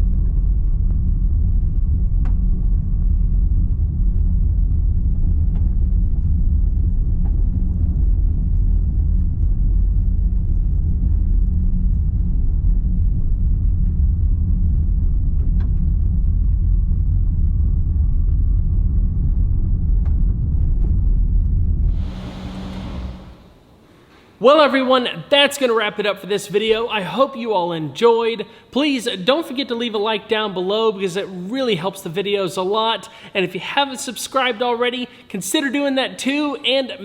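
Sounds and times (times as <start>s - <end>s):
car engine exhaust rumble: 0.0s - 23.8s.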